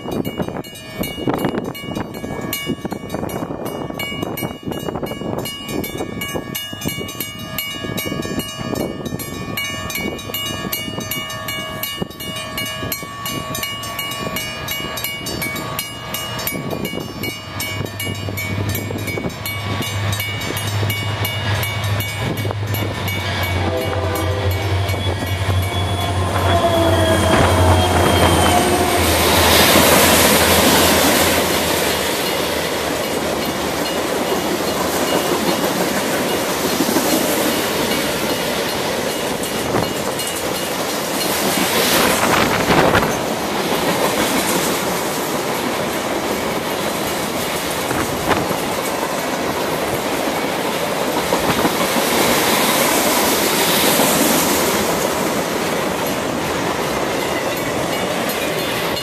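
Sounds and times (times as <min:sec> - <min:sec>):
train wheels clacking on track: 0:00.0 - 0:59.0
faint wheel squeal: 0:24.3 - 0:29.0.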